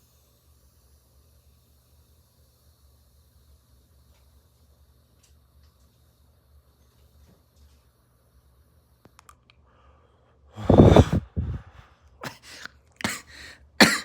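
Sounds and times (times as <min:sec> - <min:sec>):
person coughing: 0:12.2 - 0:14.0.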